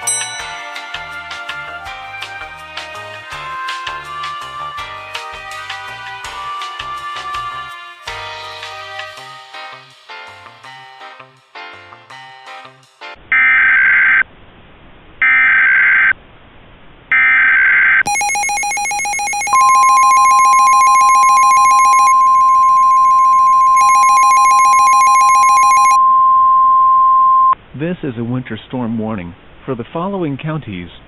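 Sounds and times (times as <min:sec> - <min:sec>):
buzzing two-tone attention signal: 0:18.1 - 0:27.6
steady single-tone alert: 0:18.1 - 0:27.6.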